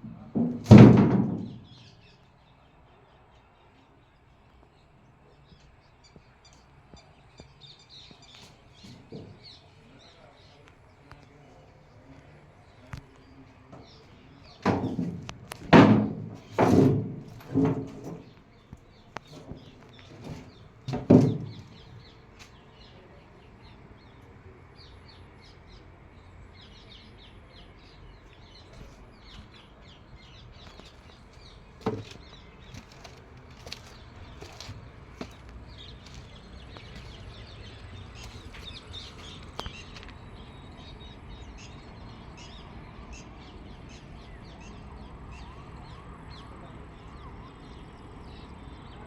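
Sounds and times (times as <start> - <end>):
birds chirping: 0.0 - 49.0
loud thud: 0.3 - 1.8, 14.6 - 18.3, 20.2 - 21.8
sharp knock: 14.7 - 18.1.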